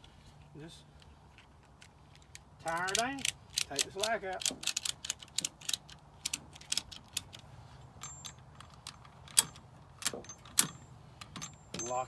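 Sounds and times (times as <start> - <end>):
metal ratchet strap clicks: 1.8 - 7.4, 8.0 - 12.0.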